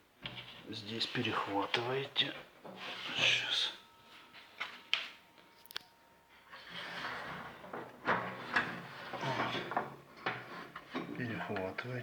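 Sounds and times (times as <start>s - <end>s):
rubbing and scraping: 2.7s - 3.5s, 6.5s - 11.7s.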